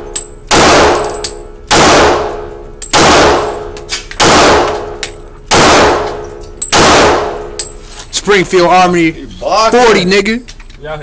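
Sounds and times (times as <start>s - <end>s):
gunshots echoing: 0.0s - 7.6s.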